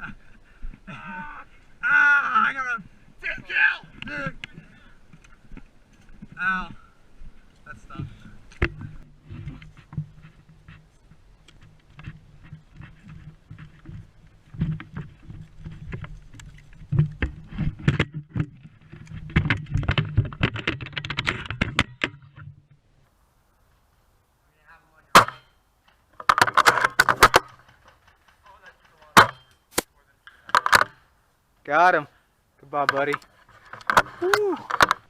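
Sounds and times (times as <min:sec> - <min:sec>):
clattering movement noise: 0:02.3 - 0:23.1, 0:25.0 - 0:35.0
scattered clicks: 0:25.9 - 0:30.9.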